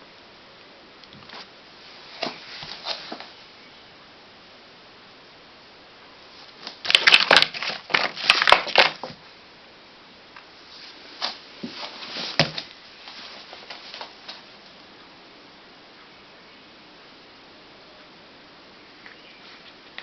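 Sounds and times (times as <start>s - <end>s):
packaging crinkling: 6.6s - 9.2s.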